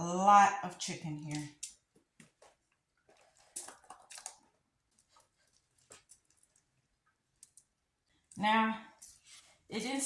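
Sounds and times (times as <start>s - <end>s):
food handled in a pan: 1.3s - 8.4s.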